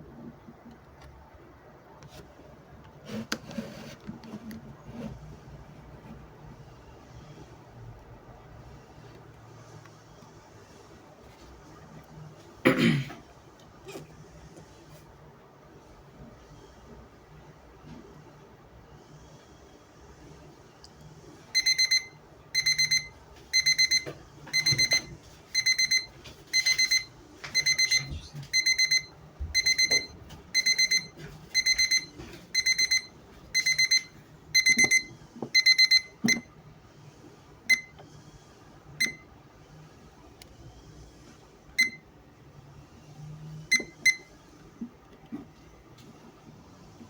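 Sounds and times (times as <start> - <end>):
alarm clock rapid high beeps: 21.6 - 36.5, 37.7 - 38.0, 39.0 - 39.2, 43.7 - 44.3.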